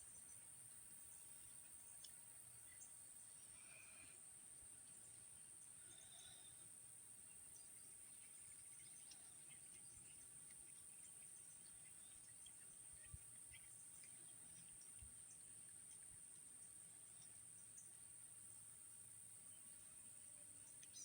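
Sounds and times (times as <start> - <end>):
faint ticks: 1.4 - 4.2, 7.6 - 18.0, 19.6 - 21.0.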